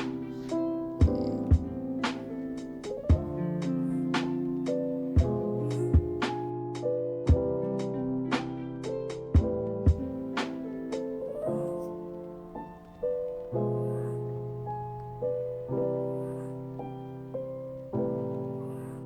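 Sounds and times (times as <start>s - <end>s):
slow piano chords: 0.0s - 19.0s.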